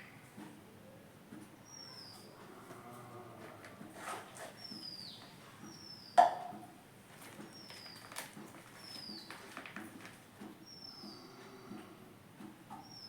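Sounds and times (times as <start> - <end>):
rustling and handling noises: 3.4 - 5.7, 7.0 - 10.6
bird chirping: 4.6 - 6.2, 7.4 - 8.2, 8.8 - 9.4, 10.6 - 11.4.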